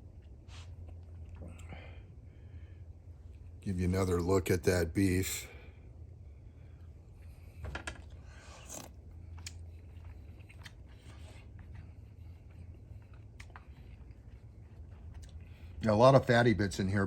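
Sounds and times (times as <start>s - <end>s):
eating clicks and scrapes: 7.3s - 16.4s.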